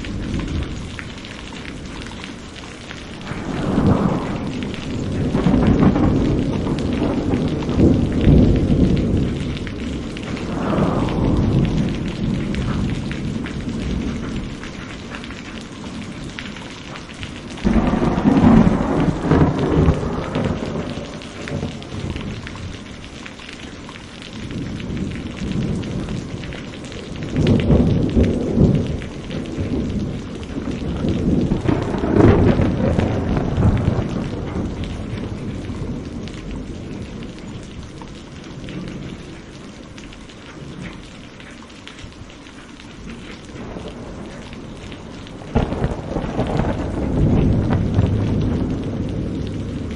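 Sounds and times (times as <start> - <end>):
thunder clap and rumbles: 0.0 - 16.4, 17.3 - 22.8, 27.3 - 38.0, 43.0 - 49.9
steady rain: 0.0 - 49.9.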